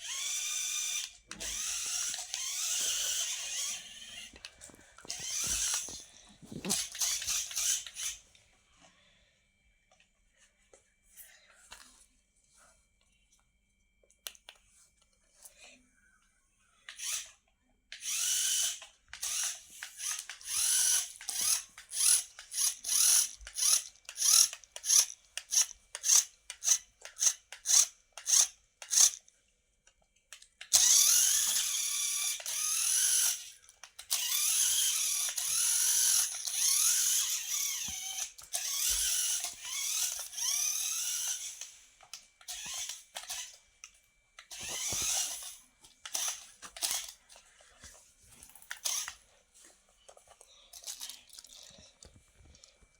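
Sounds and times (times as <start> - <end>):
small electric motor whirring: 0.0 - 4.4, 5.0 - 8.2, 16.9 - 17.3, 18.0 - 29.2, 30.7 - 43.6, 44.4 - 47.2, 48.7 - 49.2.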